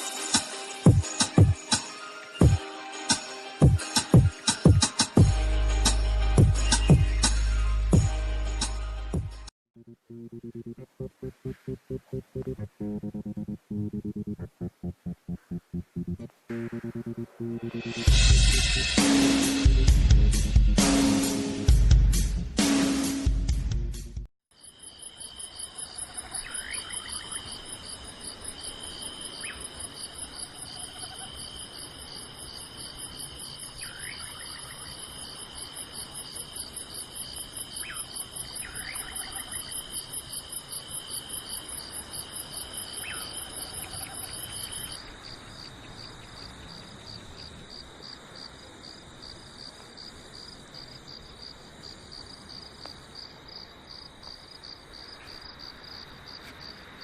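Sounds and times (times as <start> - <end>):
crickets and insects trilling: 24.5 - 57.0.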